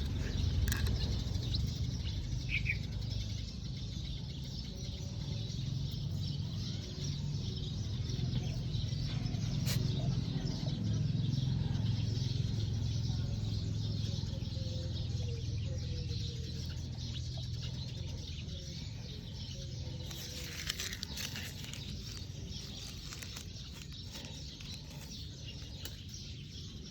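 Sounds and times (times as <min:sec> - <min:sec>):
brief rustling: 0:20.0 - 0:25.2.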